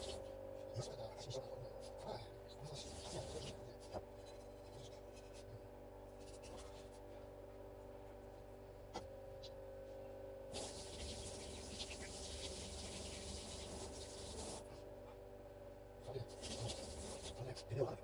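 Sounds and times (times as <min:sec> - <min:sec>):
steady hum: 0:00.0 - 0:18.0
steady hiss: 0:10.5 - 0:14.7.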